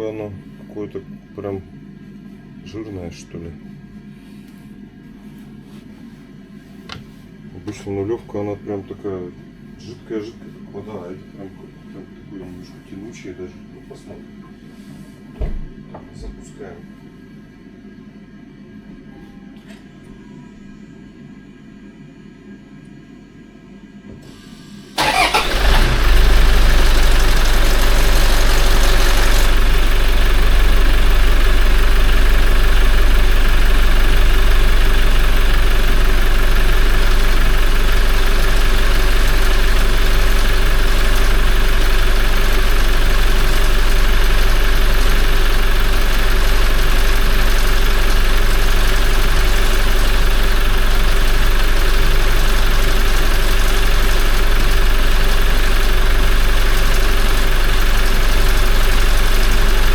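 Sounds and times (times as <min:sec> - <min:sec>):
diesel engine idling: 0:25.0 - 0:59.9.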